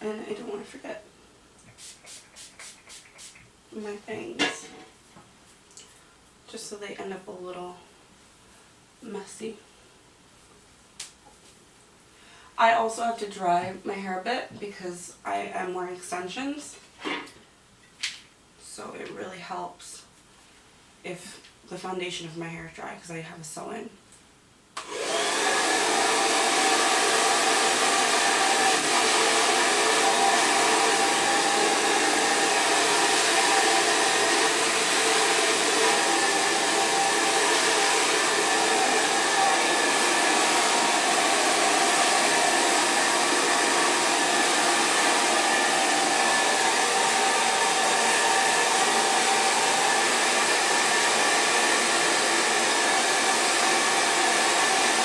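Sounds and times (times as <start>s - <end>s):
hair dryer running: 24.8s - 55.0s.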